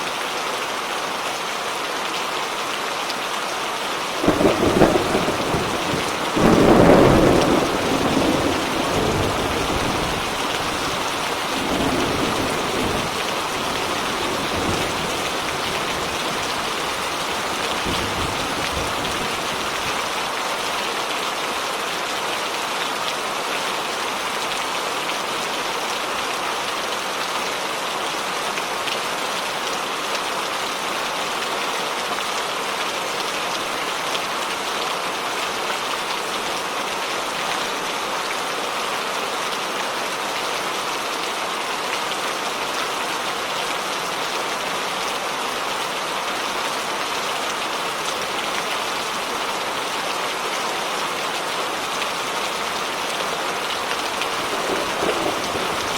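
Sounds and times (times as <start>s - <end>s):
heavy rain: 0.0s - 55.9s
thunder crack and rumble: 4.3s - 20.0s, 54.3s - 55.9s.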